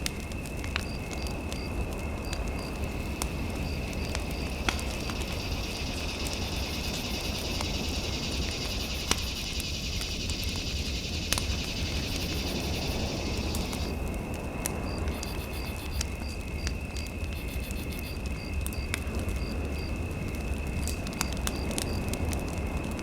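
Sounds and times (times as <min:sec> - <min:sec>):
fire crackling and popping: 0:00.0 - 0:23.0.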